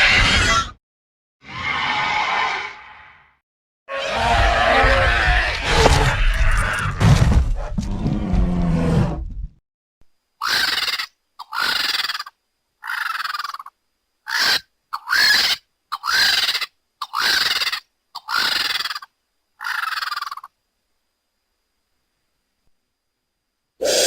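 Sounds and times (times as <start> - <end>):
creature high screeches: 0.0 - 0.8, 1.4 - 3.2, 23.8 - 24.0.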